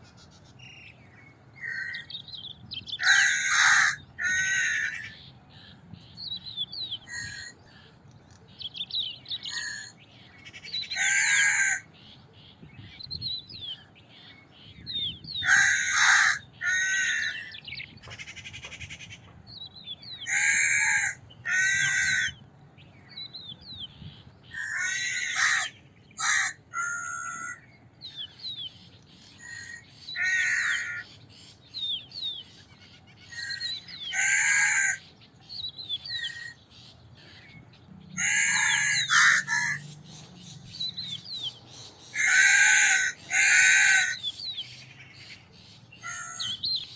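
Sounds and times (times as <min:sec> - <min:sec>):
crows cawing: 0:03.0 - 0:05.2, 0:07.0 - 0:07.6, 0:09.4 - 0:11.9, 0:15.4 - 0:19.2, 0:20.2 - 0:22.4, 0:24.5 - 0:27.6, 0:29.4 - 0:31.1, 0:33.2 - 0:35.1, 0:38.2 - 0:40.2, 0:42.0 - 0:44.4, 0:46.0 - 0:46.7.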